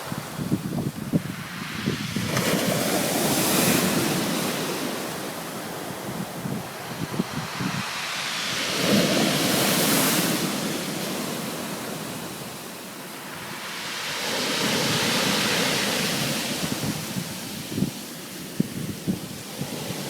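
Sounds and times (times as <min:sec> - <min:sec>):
wind buffeting microphone: 0:00.0 - 0:11.8, 0:16.0 - 0:20.0
surf washing onto beach: 0:00.0 - 0:20.0.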